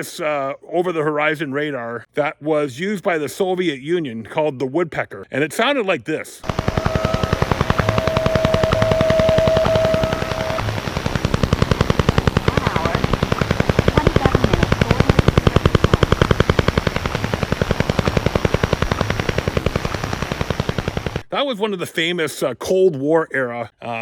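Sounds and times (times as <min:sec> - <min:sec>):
steady whistle tone: 0:06.4 - 0:11.8
radio band hiss: 0:06.4 - 0:21.2
rapid train of sharp radio clicks: 0:06.4 - 0:21.2.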